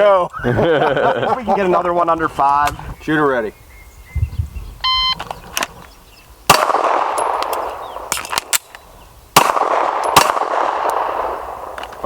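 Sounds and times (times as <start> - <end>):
handgun shots echoing: 6.5 - 8.8, 9.4 - 12.0.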